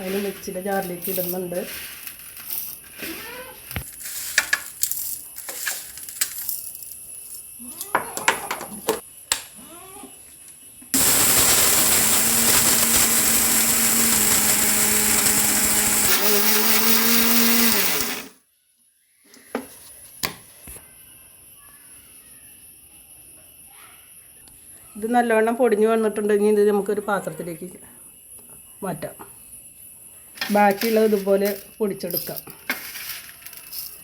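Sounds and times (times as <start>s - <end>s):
mixer grinder motor whirring: 11.0s - 18.4s.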